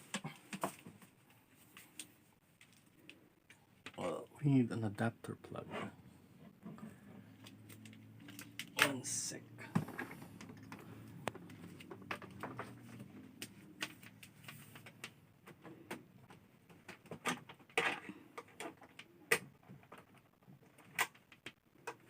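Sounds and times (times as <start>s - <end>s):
objects being moved: 5.5s - 9.0s, 9.6s - 19.0s.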